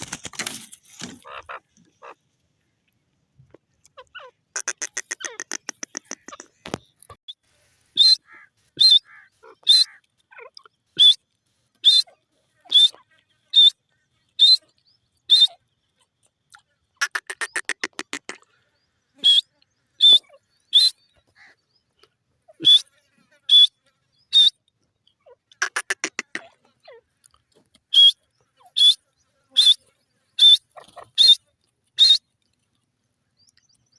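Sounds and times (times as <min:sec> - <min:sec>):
shrill bird calls: 0:08.0 - 0:11.2, 0:11.8 - 0:13.8, 0:14.4 - 0:15.6, 0:19.1 - 0:21.6, 0:22.5 - 0:22.9, 0:23.5 - 0:24.6, 0:27.9 - 0:32.3.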